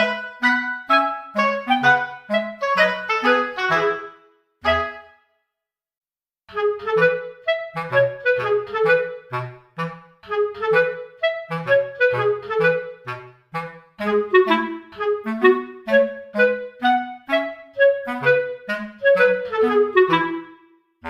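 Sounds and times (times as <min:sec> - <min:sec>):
bouncy background music: 0:00.0 - 0:05.2.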